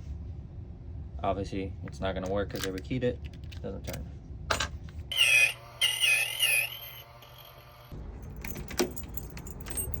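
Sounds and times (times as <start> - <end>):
high wavering squeal: 5.1 - 7.6
keys jangling in a lock: 8.2 - 10.0.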